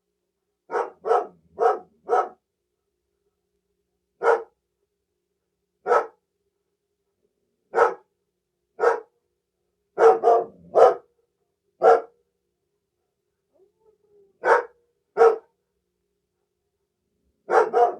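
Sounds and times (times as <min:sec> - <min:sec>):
dog barking: 0:00.7 - 0:02.4, 0:04.2 - 0:04.6, 0:05.8 - 0:06.2, 0:07.7 - 0:08.1, 0:08.8 - 0:09.2, 0:10.0 - 0:11.1, 0:11.8 - 0:12.2, 0:14.4 - 0:15.6, 0:17.4 - 0:17.9.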